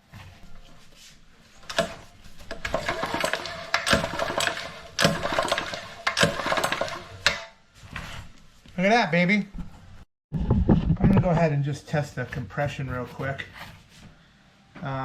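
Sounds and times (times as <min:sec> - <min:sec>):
engine turning over: 0:01.7 - 0:07.5
recoil starter cord rattling: 0:01.7 - 0:07.6.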